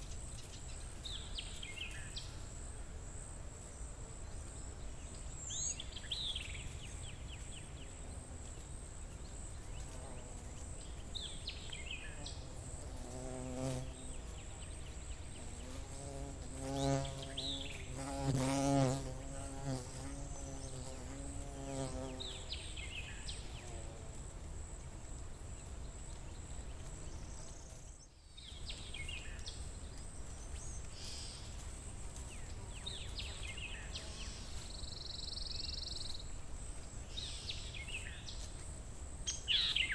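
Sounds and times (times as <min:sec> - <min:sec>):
flying insect buzzing: 0:11.9 - 0:24.3
bird singing: 0:39.3 - 0:39.9.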